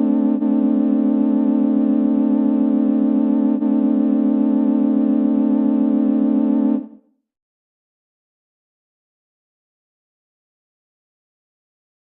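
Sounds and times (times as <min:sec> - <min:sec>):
wavering low electronic tone: 0:00.0 - 0:06.8.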